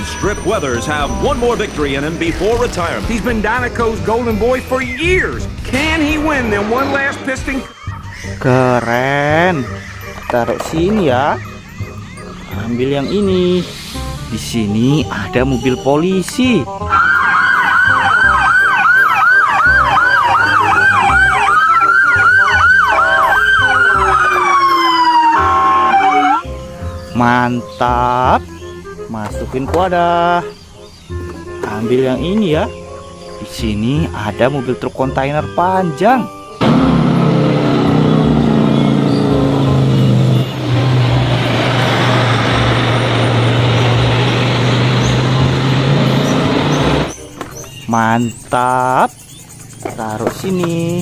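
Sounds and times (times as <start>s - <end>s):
heavy truck engine droning: 0.0s - 14.4s, 16.7s - 26.8s, 36.6s - 47.7s
road noise: 0.0s - 35.2s, 36.2s - 51.0s
police siren yelping: 9.4s - 13.4s, 16.7s - 26.5s, 36.6s - 44.4s
siren wailing tone: 16.8s - 26.5s, 36.6s - 47.1s.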